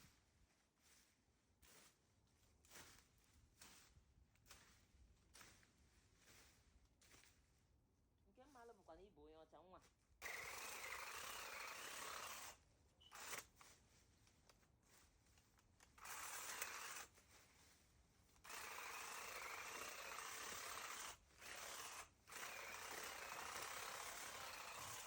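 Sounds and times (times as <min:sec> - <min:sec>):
small motor-driven tool running: 0:10.2 - 0:13.5, 0:15.9 - 0:17.1, 0:18.4 - 0:25.0.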